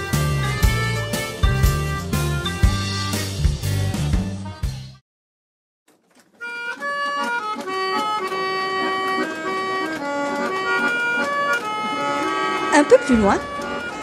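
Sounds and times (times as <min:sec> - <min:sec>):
drum and guitar music: 0:00.0 - 0:05.0
tune of held stepping notes: 0:06.4 - 0:14.0.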